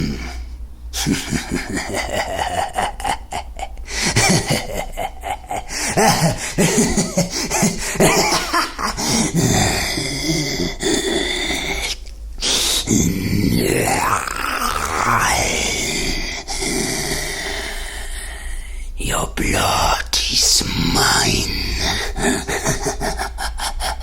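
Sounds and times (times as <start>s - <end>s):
person laughing and snickering: 0.0s - 18.2s, 20.7s - 24.0s
person coughing: 1.0s - 11.2s, 20.4s - 24.0s.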